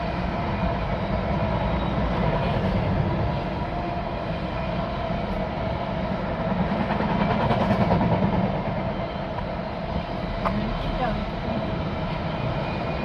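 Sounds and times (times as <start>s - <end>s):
diesel locomotive passing: 0.0s - 13.0s
train wagons rolling on track: 0.0s - 13.0s.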